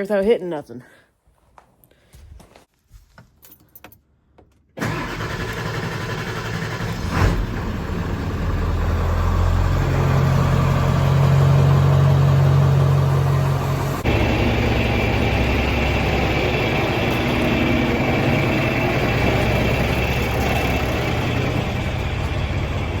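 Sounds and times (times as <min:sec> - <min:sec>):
tractor engine starting and idling: 0:04.8 - 0:23.0
engine knock: 0:14.0 - 0:23.0.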